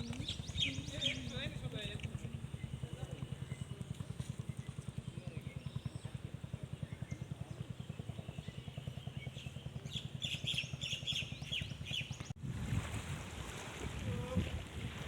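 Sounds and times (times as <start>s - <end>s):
bird chirping: 0.0s - 1.6s, 6.8s - 12.3s
water: 0.0s - 5.0s, 7.3s - 15.0s
wind: 0.0s - 15.0s.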